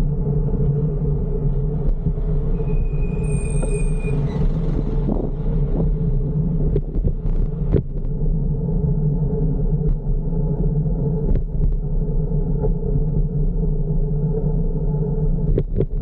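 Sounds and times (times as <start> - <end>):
road traffic rumble: 0.0 - 16.0
wind: 0.0 - 16.0
thin high whine: 2.4 - 4.8.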